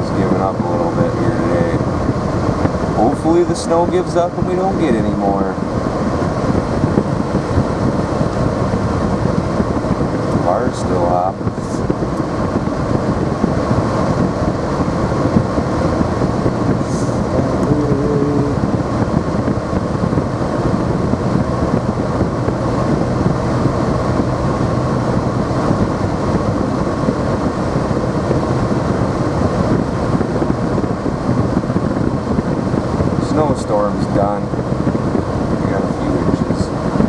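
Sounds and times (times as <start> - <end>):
car road noise inside cabin: 0.0 - 37.0.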